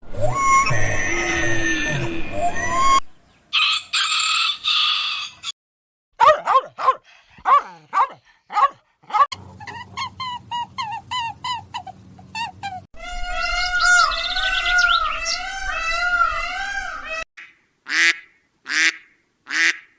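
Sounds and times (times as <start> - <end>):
rooster crowing: 3.5 - 5.5.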